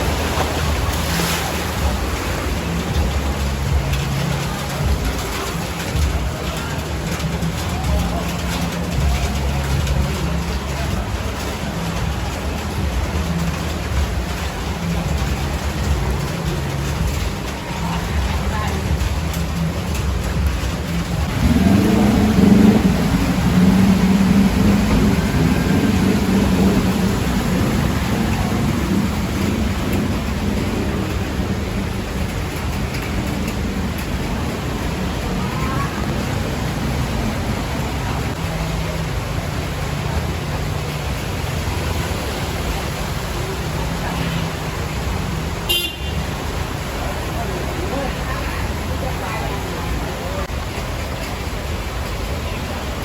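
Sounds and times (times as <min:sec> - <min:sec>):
road traffic rumble: 0:00.0 - 0:53.0
vehicle engine running: 0:00.0 - 0:53.0
vehicle horn toot: 0:45.6 - 0:46.3.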